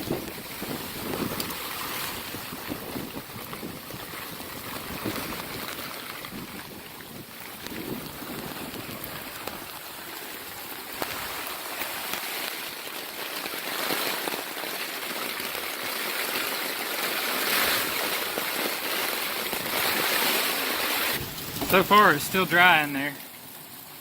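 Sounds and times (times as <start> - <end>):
gusty storm wind: 0.0 - 9.7, 21.1 - 22.7
heavy rain falling: 0.0 - 24.0.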